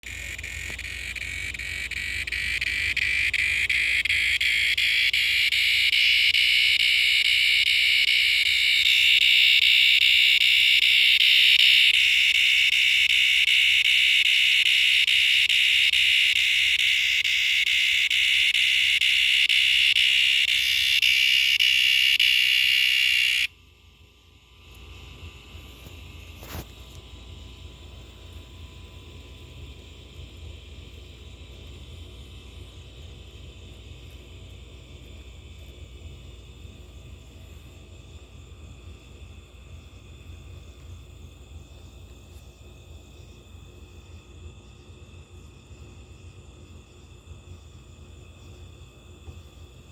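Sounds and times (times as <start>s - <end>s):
cicada buzzing: 0.0s - 23.5s.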